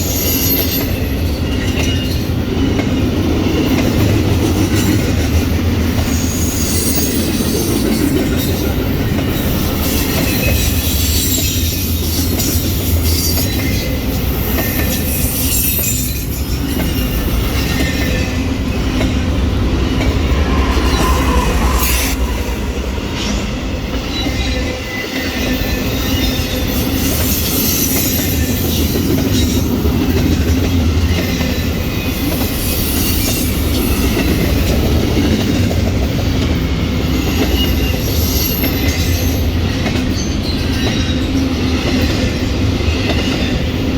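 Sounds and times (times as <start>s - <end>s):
train wheels rumbling on rail: 0.0s - 43.9s
high wheel squeals: 6.1s - 8.4s, 9.4s - 28.6s.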